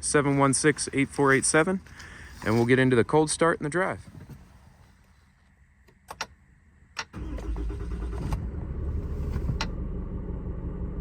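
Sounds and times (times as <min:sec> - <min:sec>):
diesel engine starting and idling: 0:07.0 - 0:11.0.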